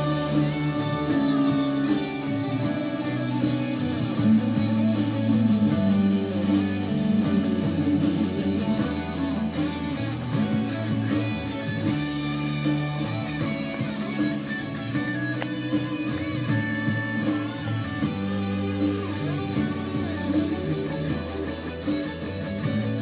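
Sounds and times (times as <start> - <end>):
instrumental rock ballad with guitar: 0.0 - 23.0.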